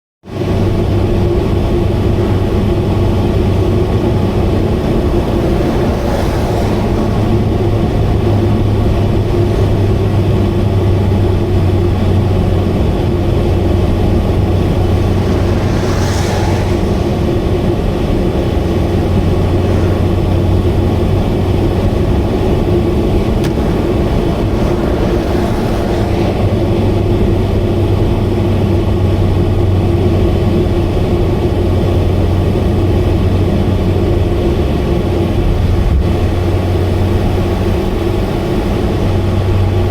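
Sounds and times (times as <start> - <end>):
car engine and exhaust droning: 0.3 - 39.9.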